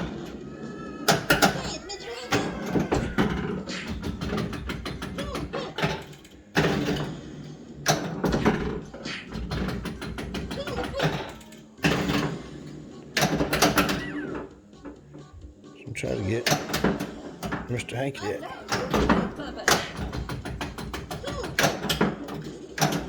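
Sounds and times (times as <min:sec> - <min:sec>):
pinball flippers and ball clacking: 0:00.0 - 0:15.3, 0:16.4 - 0:17.7, 0:18.6 - 0:23.0
pinball voice clips and effects: 0:15.8 - 0:16.9, 0:17.5 - 0:19.4.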